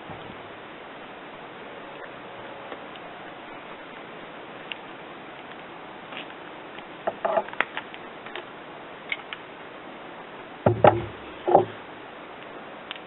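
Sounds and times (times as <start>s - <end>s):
tools knocking: 10.7s - 11.8s.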